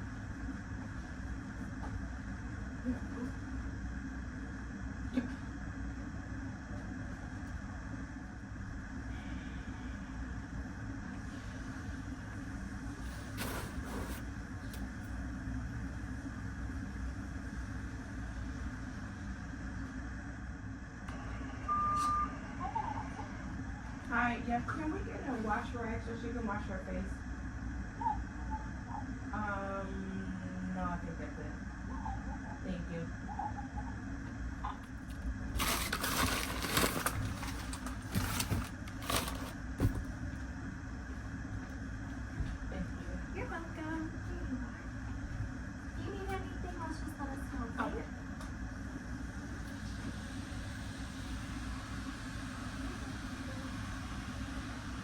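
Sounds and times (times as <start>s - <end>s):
steady low hum: 0.0s - 55.0s
rustling and crinkling handling: 13.0s - 14.8s, 35.0s - 40.1s.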